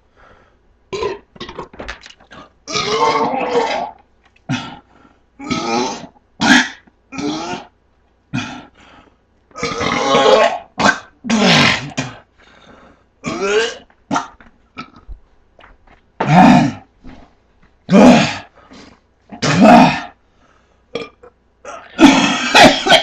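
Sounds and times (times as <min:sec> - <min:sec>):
man burping loudly: 0:00.9 - 0:04.8, 0:05.4 - 0:07.7, 0:09.6 - 0:12.2, 0:13.2 - 0:15.0, 0:17.9 - 0:18.5, 0:19.3 - 0:20.2, 0:20.9 - 0:23.0.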